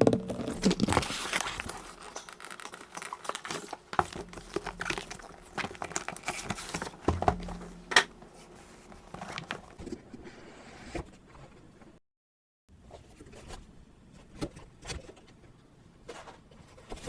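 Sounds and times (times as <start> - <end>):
packaging rustling: 0.0 - 9.9.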